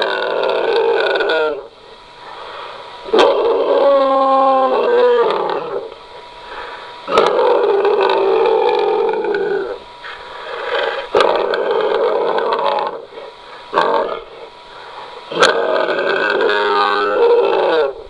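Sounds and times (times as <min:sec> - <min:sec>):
altered voice dinosaur roar: 0:00.0 - 0:01.7, 0:07.1 - 0:09.8, 0:10.5 - 0:13.1, 0:15.3 - 0:18.0.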